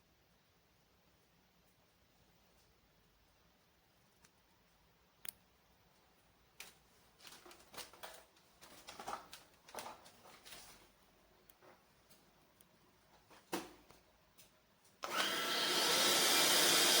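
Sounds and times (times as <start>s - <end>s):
rustling and scraping: 6.6s - 11.0s.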